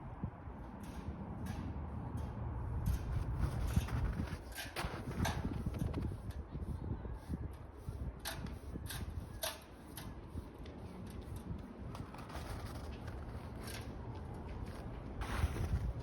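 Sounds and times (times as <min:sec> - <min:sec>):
footsteps crunching in snow: 0:11.9 - 0:16.0.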